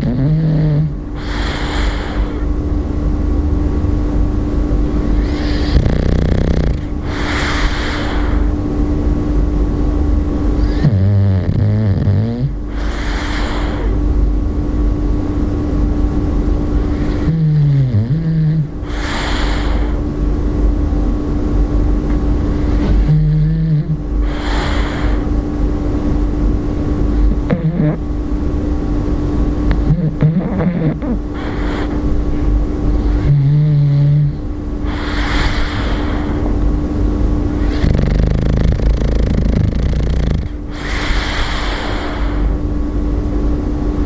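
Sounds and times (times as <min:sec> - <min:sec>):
dog rattling snore: 0:00.0 - 0:00.9, 0:29.7 - 0:31.7, 0:37.7 - 0:41.0
dog snoring: 0:00.0 - 0:02.5, 0:05.0 - 0:08.6, 0:10.6 - 0:14.0, 0:16.9 - 0:20.0, 0:22.1 - 0:25.4, 0:27.1 - 0:28.2, 0:29.6 - 0:36.7, 0:37.5 - 0:42.6
steady low hum: 0:00.0 - 0:44.0.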